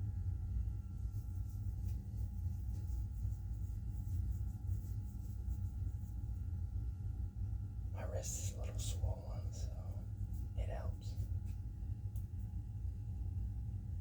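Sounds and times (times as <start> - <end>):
faint steady whine: 0.0 - 14.0
steady low rumble: 0.0 - 14.0
fingers rubbing skin: 0.9 - 6.5.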